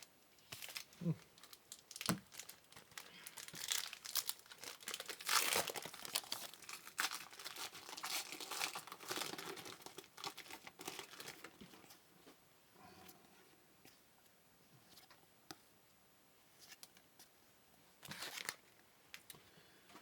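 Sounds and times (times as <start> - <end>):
wrapper crinkling and tearing: 0.0 - 11.9, 18.0 - 19.2.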